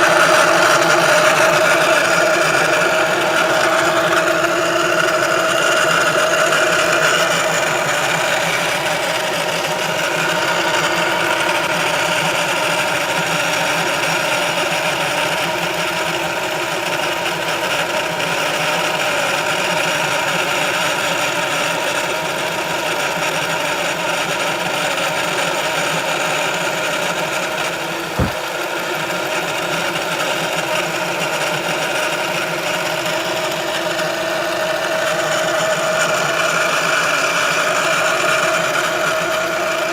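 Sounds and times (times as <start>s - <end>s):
car mechanical buzz: 27.9s - 28.4s
short thump: 28.2s - 28.4s.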